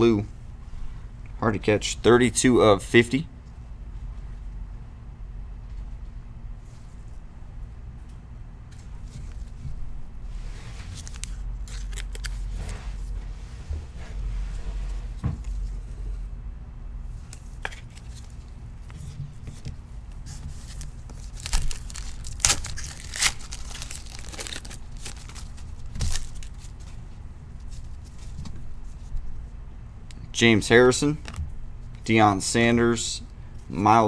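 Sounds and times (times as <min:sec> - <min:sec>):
card pack wrapper tearing and crinkling: 0:11.0 - 0:12.5, 0:20.5 - 0:26.7.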